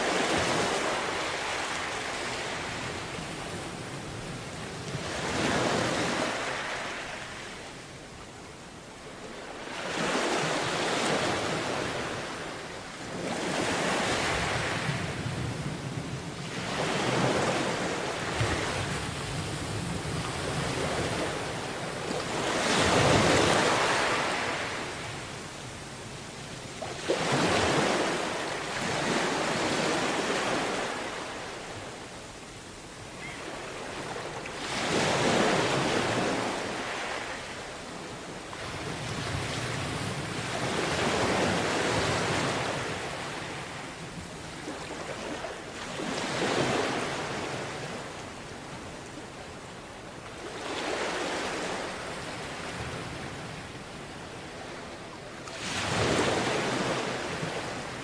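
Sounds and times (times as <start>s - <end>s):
waves breaking on beach: 0.0s - 58.0s.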